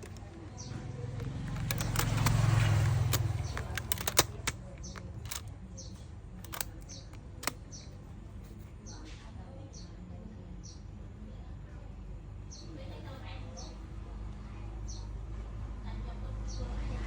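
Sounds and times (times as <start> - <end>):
small sharp clicks and taps: 0.0 - 5.6, 6.4 - 7.6.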